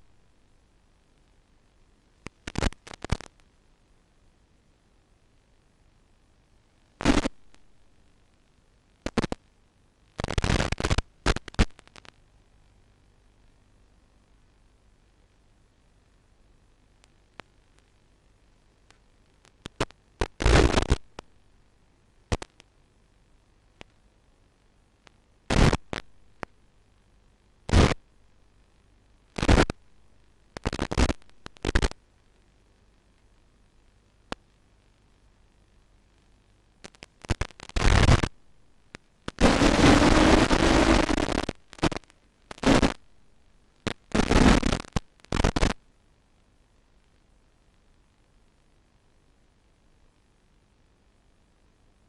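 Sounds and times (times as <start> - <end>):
crackling radio static: 0.0 - 3.6, 6.6 - 13.9, 14.6 - 46.0
sharp clicks: 9.0 - 9.4, 22.3 - 22.7.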